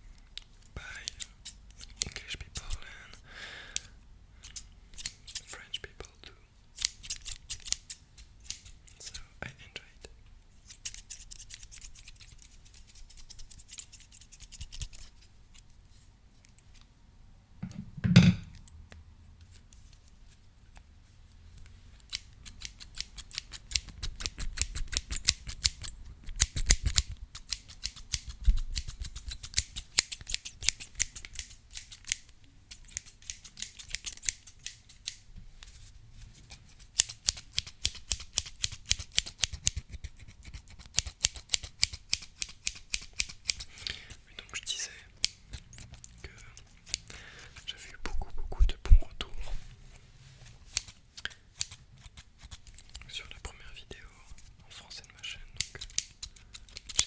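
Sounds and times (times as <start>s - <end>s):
scissors snipping: 0.9s - 2.8s, 3.7s - 5.5s, 6.8s - 9.2s, 10.6s - 15.7s, 22.0s - 35.2s, 36.5s - 48.4s, 50.7s - 53.4s, 54.9s - 57.0s.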